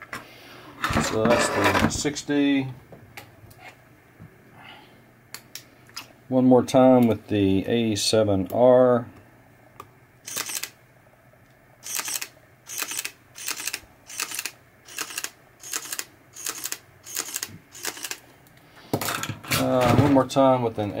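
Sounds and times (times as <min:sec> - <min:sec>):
camera shutter double clicks: 0:10.3 - 0:10.8, 0:11.8 - 0:18.2.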